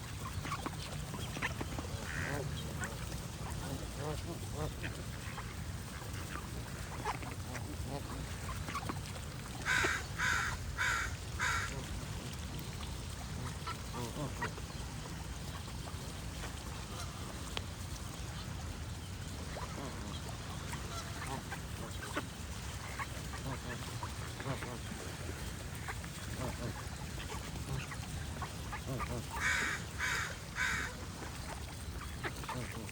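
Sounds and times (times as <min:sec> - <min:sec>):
geese honking: 0:01.3 - 0:05.0.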